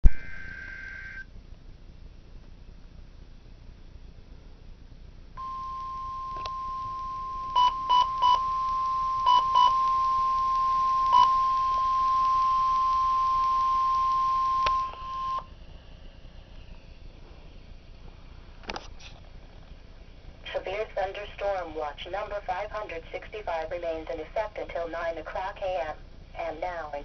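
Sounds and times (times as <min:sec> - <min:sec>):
faint radio hiss: 0:00.0 - 0:27.0
short high beeps: 0:05.4 - 0:15.4
steady alarm tone: 0:05.4 - 0:15.5.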